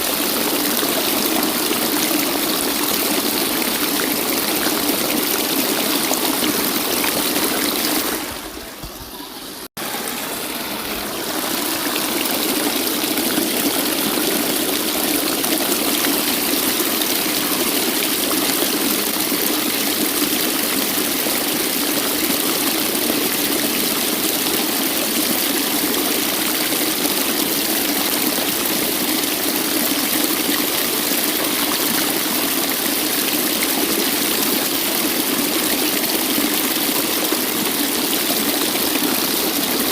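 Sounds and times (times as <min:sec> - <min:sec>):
waterfall rushing: 0:00.0 - 0:24.4.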